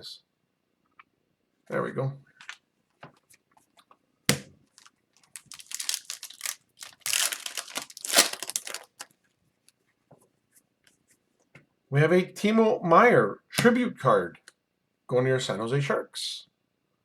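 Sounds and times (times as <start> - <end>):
packaging crinkling and rustling: 4.7 - 9.2.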